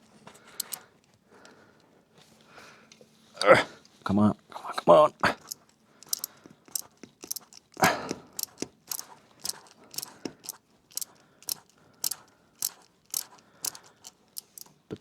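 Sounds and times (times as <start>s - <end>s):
hand tool metallic clicks: 0.6s - 0.8s, 5.4s - 14.8s.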